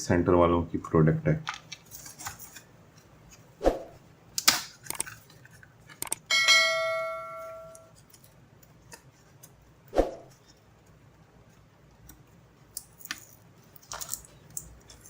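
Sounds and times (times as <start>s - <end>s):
bell-like metallic ring: 6.3s - 7.9s.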